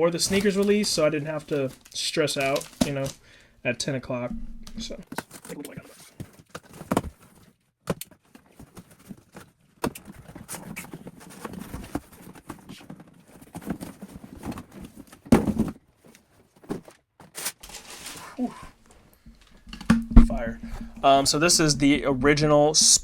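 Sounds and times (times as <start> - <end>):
cardboard box rustling: 0.2 - 3.2, 4.9 - 19.4
loud thump: 4.3 - 5.0, 19.9 - 21.0.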